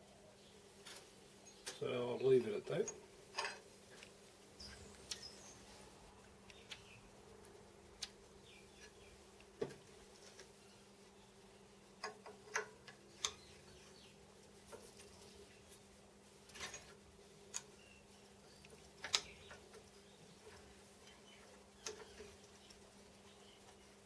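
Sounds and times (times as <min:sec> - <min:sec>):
faint steady hum: 0:00.0 - 0:24.0
metal parts and tools clicking: 0:16.5 - 0:17.8.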